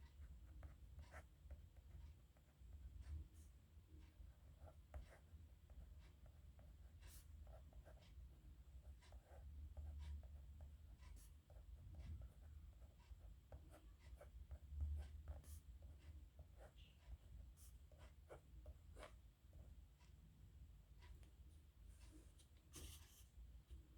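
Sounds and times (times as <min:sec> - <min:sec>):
pen scratching on paper: 0:04.4 - 0:19.6, 0:22.7 - 0:23.3.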